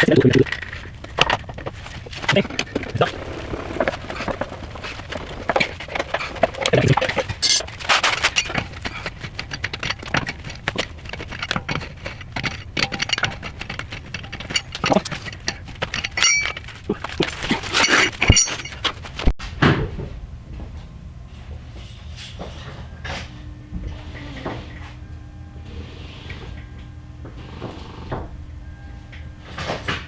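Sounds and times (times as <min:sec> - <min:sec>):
metal tools clinking and rattling: 0:00.0 - 0:19.3.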